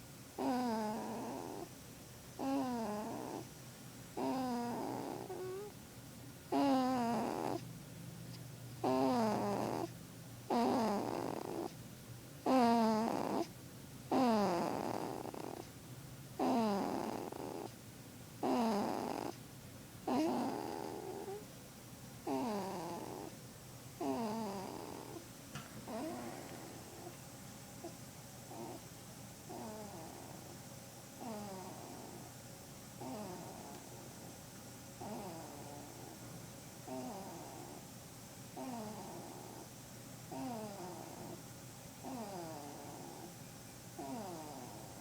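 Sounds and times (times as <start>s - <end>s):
whistling snoring: 0.4s - 1.7s, 6.5s - 7.6s, 8.8s - 9.9s, 10.5s - 11.8s, 14.1s - 15.7s, 16.4s - 17.7s, 18.4s - 19.4s, 22.3s - 23.3s, 40.3s - 41.4s, 42.0s - 43.4s, 44.0s - 45.0s.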